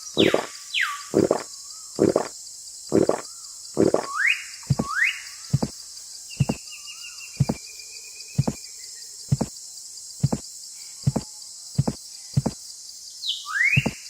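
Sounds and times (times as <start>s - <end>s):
birdsong: 0.0s - 9.6s, 10.2s - 14.0s
dull knocks: 4.7s - 4.9s, 5.5s - 5.7s, 6.4s - 6.6s, 7.4s - 7.6s, 8.4s - 8.6s, 9.3s - 9.5s, 10.2s - 10.4s, 11.8s - 12.6s.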